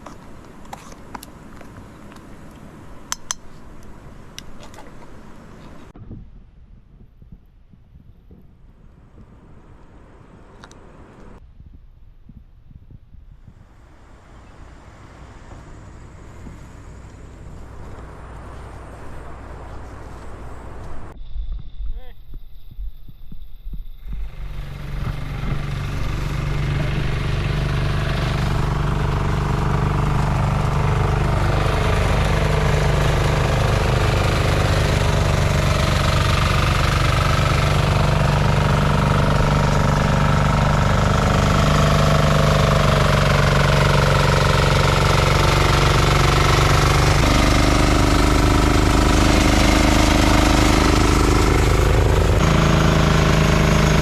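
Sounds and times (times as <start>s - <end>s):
small engine running: 24.0s - 54.0s.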